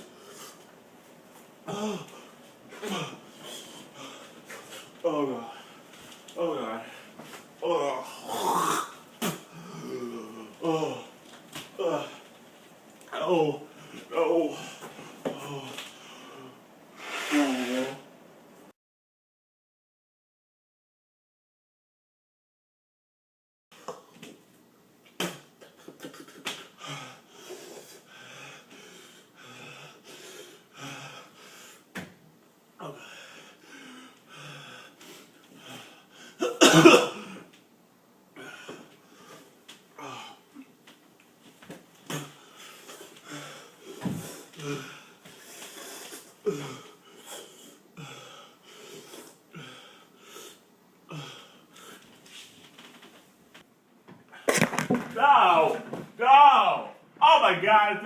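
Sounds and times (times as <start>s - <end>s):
man breathing hard: 26.7s - 31.9s, 32.8s - 36.4s, 42.3s - 52.1s.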